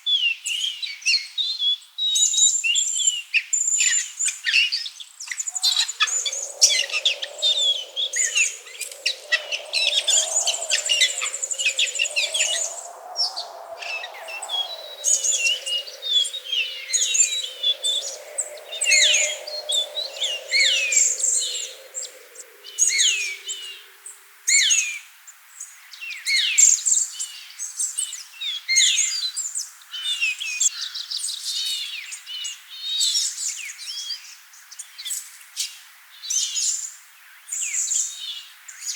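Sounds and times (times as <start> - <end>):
small birds chirping: 5.5 - 24.1.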